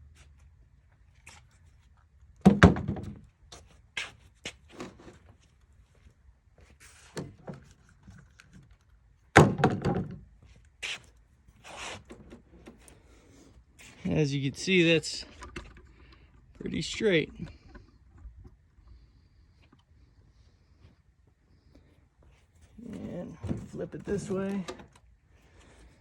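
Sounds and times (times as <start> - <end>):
loud wooden thuds: 2.4 - 3.2, 9.4 - 10.2.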